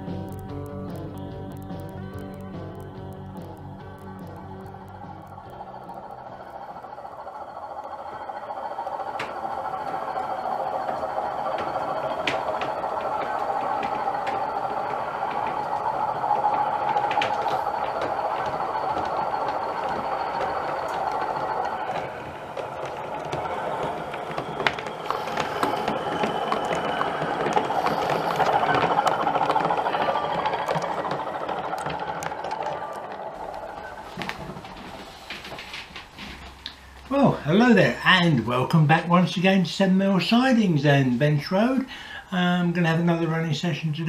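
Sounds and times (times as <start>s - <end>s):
model train rumbling on track: 0.0s - 44.0s
track clicks: 0.0s - 44.0s.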